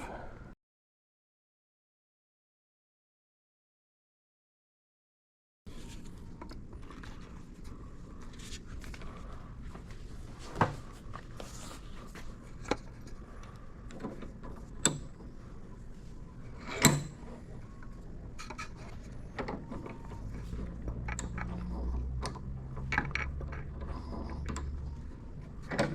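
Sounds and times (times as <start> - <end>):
low background hum: 5.7 - 25.9.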